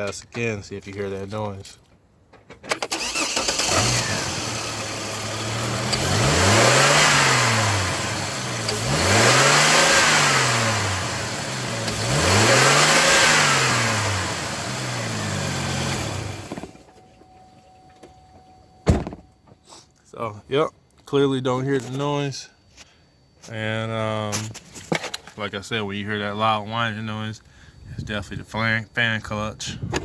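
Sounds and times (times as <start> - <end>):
car engine revving: 2.9 - 16.7.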